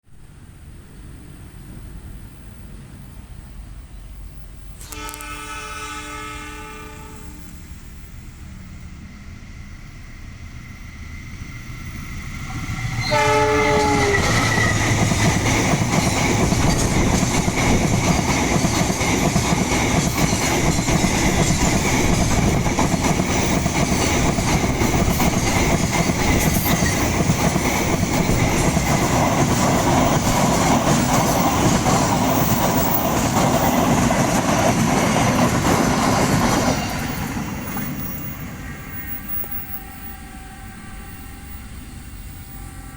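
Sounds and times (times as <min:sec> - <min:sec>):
diesel locomotive horn blasts: 0:04.8 - 0:07.8, 0:13.0 - 0:15.0, 0:39.0 - 0:42.9
train wheels on rails clattering: 0:12.2 - 0:39.5.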